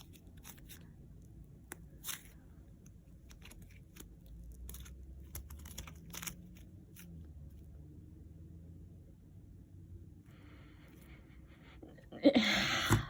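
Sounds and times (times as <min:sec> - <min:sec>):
sticky dough crackling when pulled: 0:00.0 - 0:07.3.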